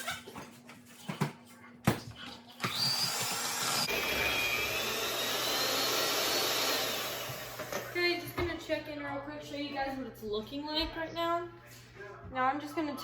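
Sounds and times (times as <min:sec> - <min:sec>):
electric mixer motor whirring: 0:02.6 - 0:08.0.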